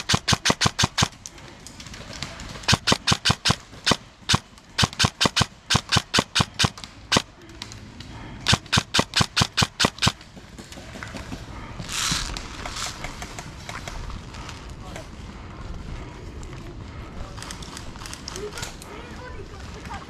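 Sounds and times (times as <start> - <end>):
airsoft guns firing: 0.0 - 14.0.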